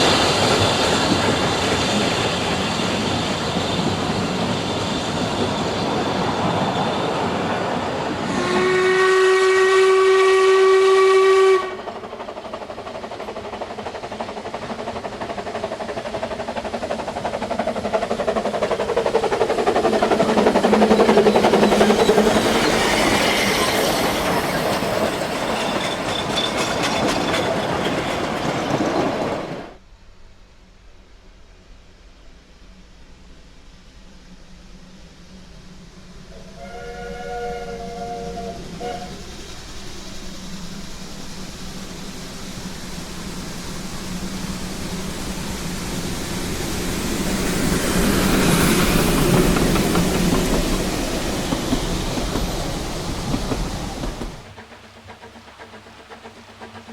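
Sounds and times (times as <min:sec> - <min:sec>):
steam train running: 0:00.0 - 0:56.9
train whistle blast: 0:08.2 - 0:12.0, 0:36.3 - 0:39.4.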